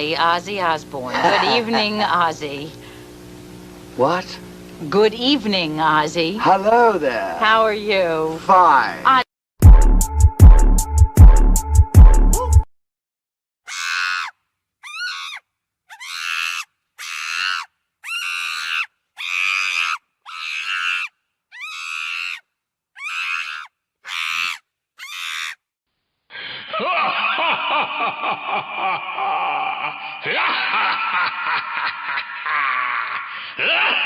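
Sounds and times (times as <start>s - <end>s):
wailing and screaming: 13.7s - 22.4s, 23.0s - 25.6s, 29.3s - 30.9s, 33.6s - 34.0s
short human screams: 13.7s - 25.6s, 33.6s - 34.0s.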